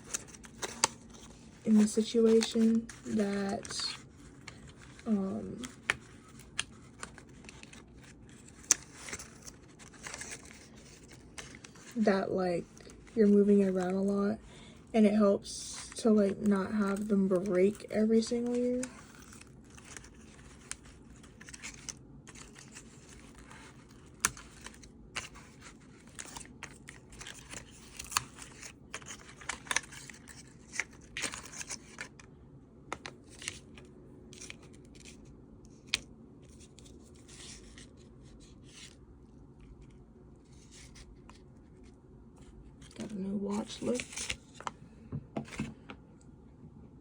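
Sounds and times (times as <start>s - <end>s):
packaging rustling and tearing: 0.0s - 14.2s, 15.8s - 32.3s, 42.8s - 44.8s.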